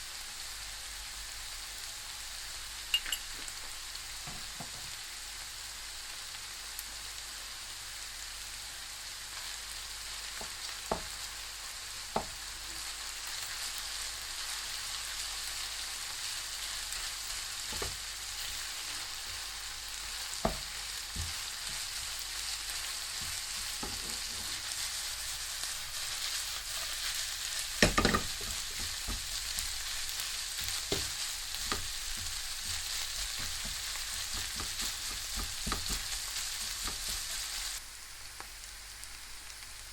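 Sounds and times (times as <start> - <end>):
beef sizzling in a pan: 0.0 - 39.9
utensil knocking against pan: 34.4 - 36.1.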